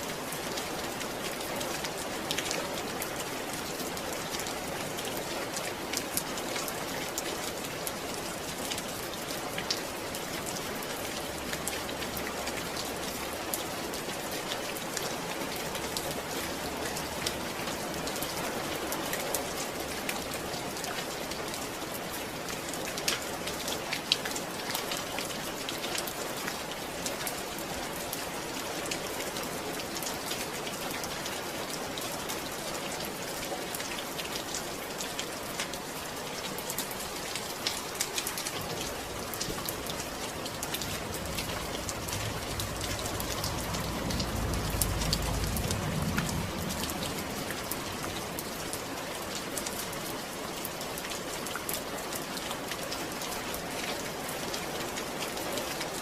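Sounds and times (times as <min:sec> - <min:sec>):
steady rain falling: 0:00.0 - 0:56.0
low rumble: 0:39.9 - 0:48.4.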